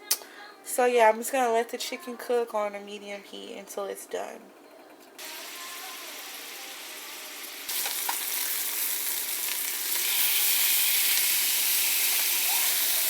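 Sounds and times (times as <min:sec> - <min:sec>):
chicken sizzling in a pan: 0:05.2 - 0:13.0.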